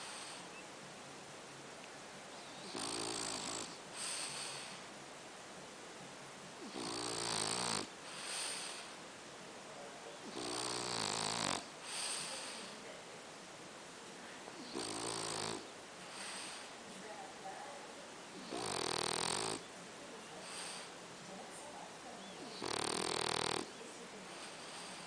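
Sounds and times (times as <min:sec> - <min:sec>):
pet snoring: 0:00.0 - 0:00.6, 0:02.5 - 0:04.8, 0:06.6 - 0:09.0, 0:10.2 - 0:12.8, 0:14.6 - 0:16.7, 0:18.3 - 0:19.7, 0:22.4 - 0:25.0.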